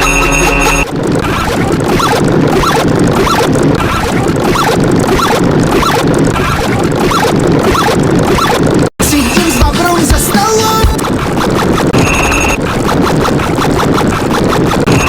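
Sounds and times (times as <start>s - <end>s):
rapid rasping chatter: 9.0s - 11.1s.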